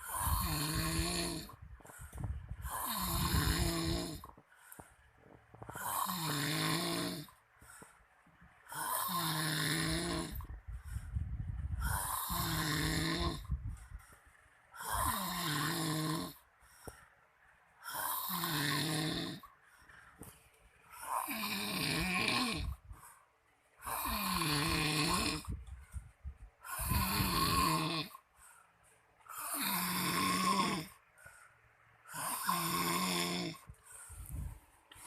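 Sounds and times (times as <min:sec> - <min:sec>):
man snoring loudly: 0:00.0 - 0:01.6, 0:02.6 - 0:04.3, 0:05.7 - 0:07.4, 0:08.7 - 0:10.5, 0:11.8 - 0:13.5, 0:14.8 - 0:16.4, 0:17.8 - 0:19.5, 0:21.0 - 0:22.8, 0:23.8 - 0:25.5, 0:26.6 - 0:28.2, 0:29.3 - 0:31.0, 0:32.1 - 0:33.7
quiet breathing: 0:00.0 - 0:27.4, 0:28.0 - 0:35.0.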